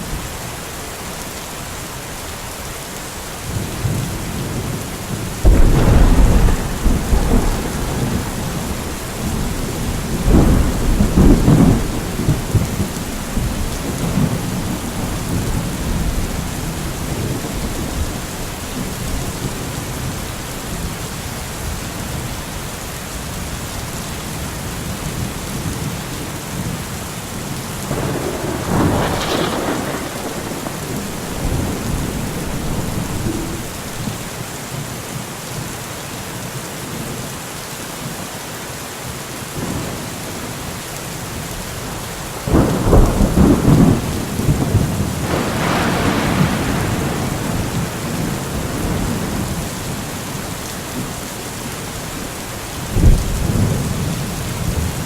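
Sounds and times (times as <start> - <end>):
steady rain: 0.0 - 55.0
thunder rumbling: 3.5 - 20.2, 27.8 - 34.3, 42.4 - 51.2, 52.2 - 55.0.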